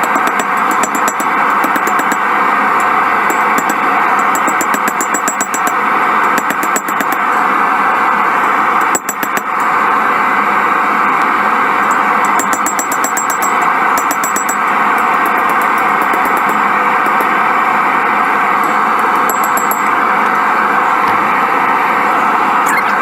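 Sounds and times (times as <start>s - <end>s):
rapid high-pitched ticking: 0.0s - 7.4s, 11.8s - 17.4s
rushing mechanical noise: 0.0s - 23.0s.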